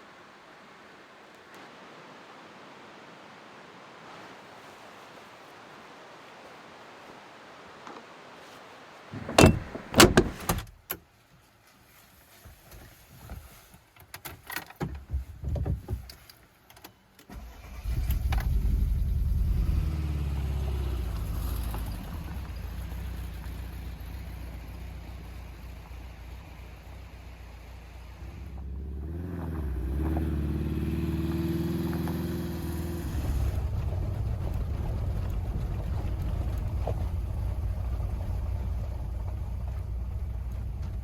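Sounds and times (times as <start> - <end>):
sharp thumps and knocks: 9.2 - 10.6
engine starting and idling: 17.3 - 28.8.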